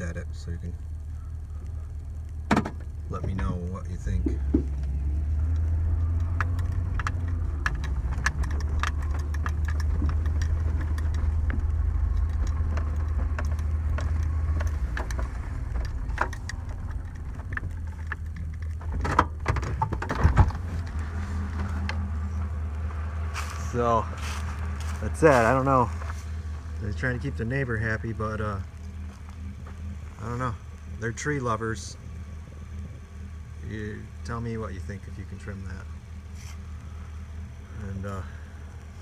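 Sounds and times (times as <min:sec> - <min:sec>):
small clicks and ticks: 0:00.0 - 0:39.0
vehicle engine running: 0:00.0 - 0:39.0
knocks and rattles: 0:01.7 - 0:23.3.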